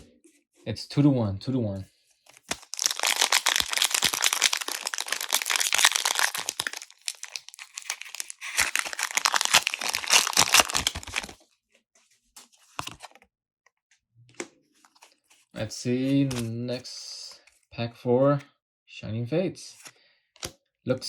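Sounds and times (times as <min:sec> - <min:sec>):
foil wrapper tearing and crinkling: 0:02.5 - 0:11.4.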